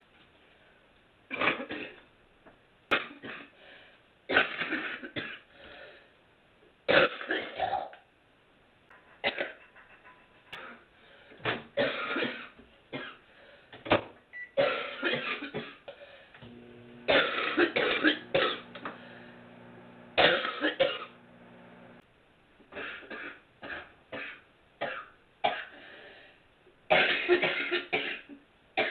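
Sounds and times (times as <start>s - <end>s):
woman coughing and clearing throat: 4.3s - 5.4s, 11.8s - 13.2s, 14.6s - 15.8s, 17.1s - 18.7s, 20.2s - 21.2s, 26.9s - 28.9s.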